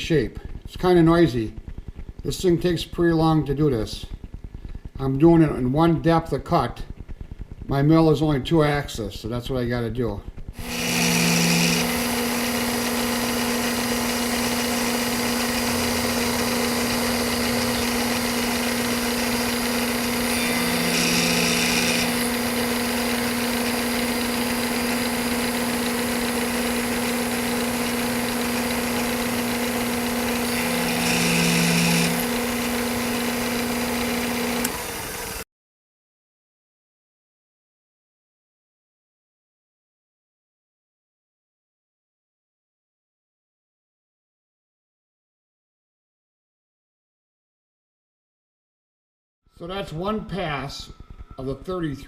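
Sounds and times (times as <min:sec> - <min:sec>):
end mill cutting aluminum: 0:10.6 - 0:35.4
milling machine hum: 0:10.6 - 0:35.4.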